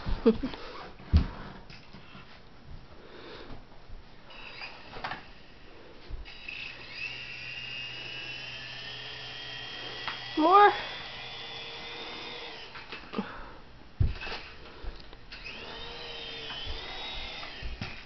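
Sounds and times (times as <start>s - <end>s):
toy helicopter motor whine: 4.3s - 13.2s, 14.1s - 14.7s, 15.3s - 18.0s.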